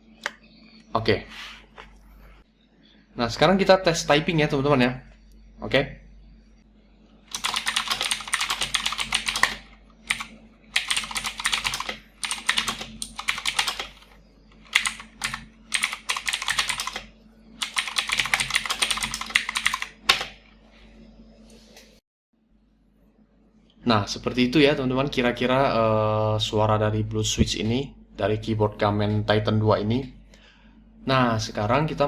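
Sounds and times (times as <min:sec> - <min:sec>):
mechanical keyboard typing: 0:07.3 - 0:20.4.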